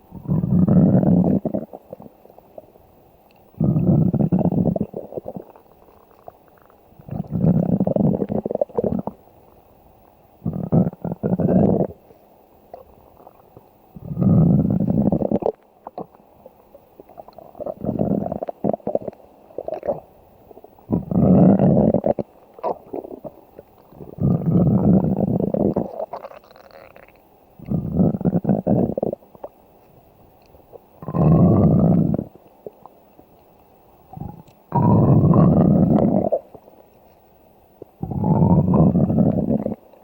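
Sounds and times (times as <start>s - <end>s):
stomach growling: 0.0s - 9.6s, 10.4s - 36.7s, 37.8s - 40.0s.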